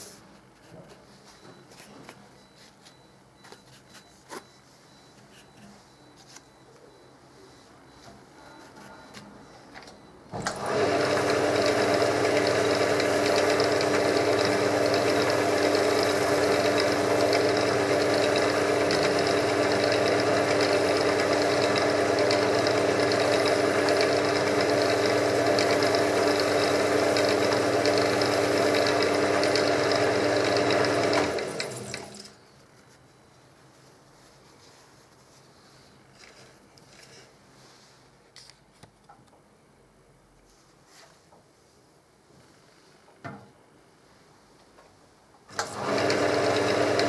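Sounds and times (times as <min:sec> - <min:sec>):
electric wood lathe motor humming: 0:10.4 - 0:32.2, 0:45.5 - 0:47.0.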